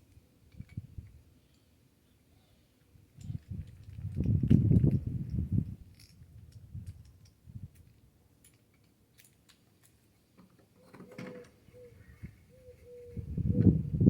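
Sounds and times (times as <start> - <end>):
bird cooing: 10.8 - 13.9.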